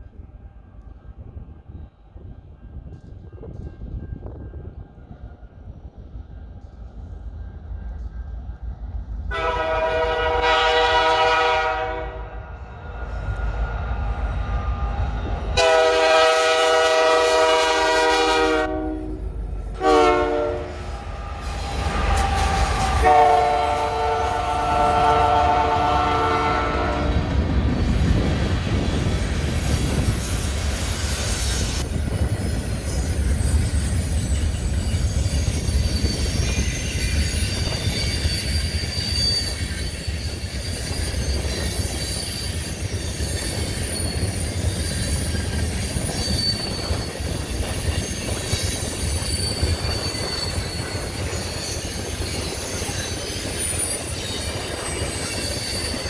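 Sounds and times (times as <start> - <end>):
train rumbling past: 0.0 - 56.0
train air horn: 9.3 - 12.4, 15.6 - 19.2, 19.8 - 21.0, 22.8 - 27.2
wheel squeal: 28.0 - 56.0.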